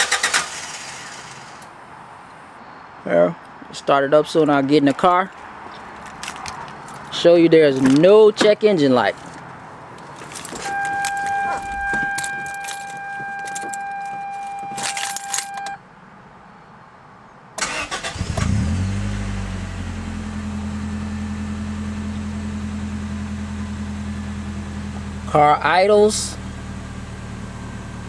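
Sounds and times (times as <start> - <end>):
keys clicking: 10.0 - 15.8
car engine idling: 10.1 - 15.6, 17.6 - 28.0
warning chime: 10.6 - 15.8.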